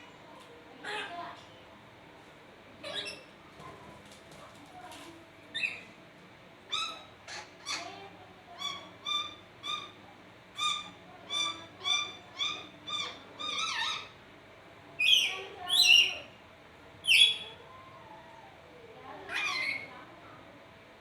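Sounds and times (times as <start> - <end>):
parrot calling: 10.6 - 14.2, 17.0 - 18.2, 19.3 - 19.9.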